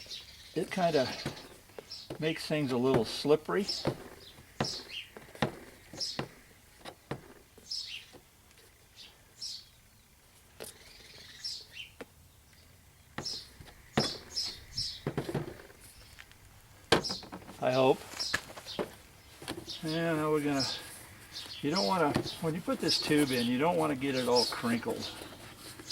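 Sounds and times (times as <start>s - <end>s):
small bird chirping: 0.0s - 3.0s, 3.6s - 6.6s, 7.6s - 16.3s, 17.0s - 25.9s
clicks and knocks handling tire: 0.6s - 8.6s, 13.2s - 19.9s, 21.4s - 25.9s.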